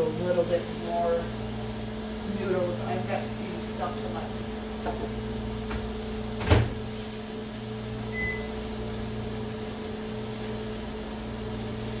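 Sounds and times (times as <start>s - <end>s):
microwave oven humming: 0.0s - 12.0s
short high beep: 8.1s - 8.5s.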